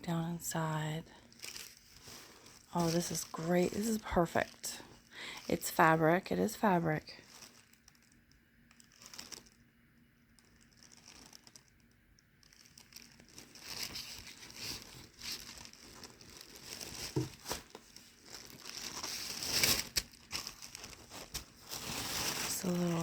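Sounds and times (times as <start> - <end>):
tissue paper rustling: 1.2 - 8.1, 8.7 - 9.6, 10.4 - 11.8, 12.4 - 23.0.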